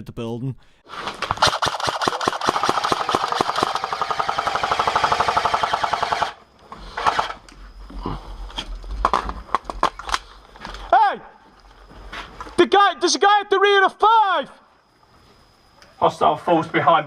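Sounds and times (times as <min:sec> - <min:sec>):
airsoft gun firing: 0:01.3 - 0:06.4.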